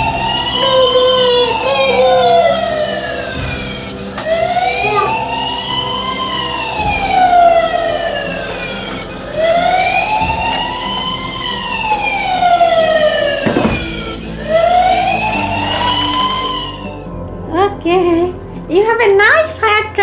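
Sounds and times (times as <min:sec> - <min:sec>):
toy siren wailing: 0:00.0 - 0:17.0.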